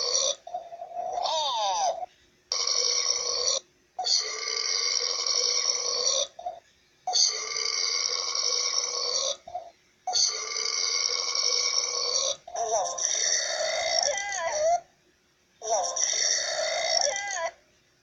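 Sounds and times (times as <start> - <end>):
person burping: 10.2 - 14.2, 15.7 - 17.4.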